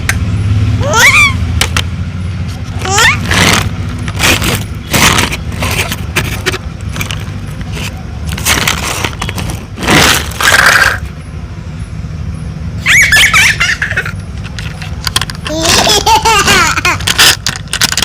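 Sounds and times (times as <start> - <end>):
vehicle engine humming: 0.0 - 18.0
harsh scraping crunching noises: 2.4 - 11.2, 14.4 - 18.0.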